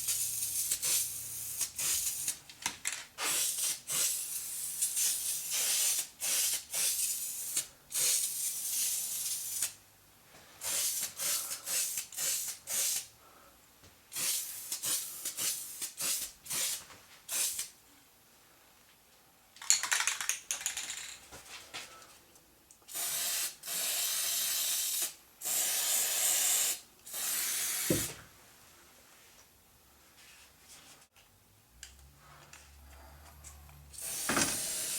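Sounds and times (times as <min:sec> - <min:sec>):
aerosol spray can hissing: 0:22.9 - 0:28.1, 0:34.0 - 0:34.9.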